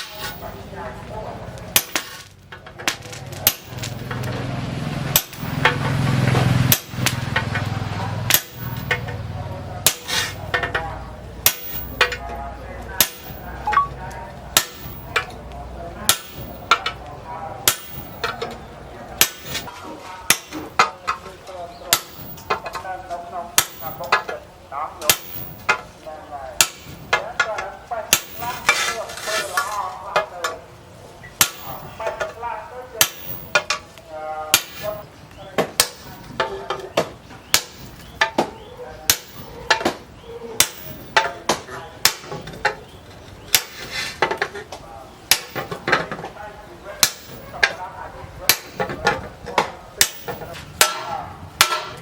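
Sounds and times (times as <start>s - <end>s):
hammer striking steel: 0.0s - 0.5s, 1.7s - 4.4s, 5.1s - 6.0s, 6.6s - 9.2s, 9.8s - 12.4s, 13.0s - 15.4s, 16.0s - 18.6s, 19.2s - 21.0s, 21.9s - 22.7s, 23.6s - 24.3s, 25.0s - 25.9s, 26.6s - 27.5s, 28.1s - 29.0s, 31.4s - 32.4s, 33.0s - 33.8s, 34.5s - 35.1s, 35.7s - 38.5s, 39.1s - 40.0s, 40.6s - 42.5s, 43.5s - 43.9s, 45.3s - 46.0s, 47.0s - 47.8s, 48.5s - 52.0s.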